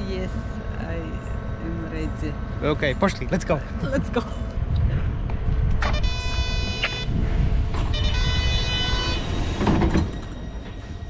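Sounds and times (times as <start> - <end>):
low rumble: 0.0 - 11.0
horn-like signal tone: 5.8 - 11.0.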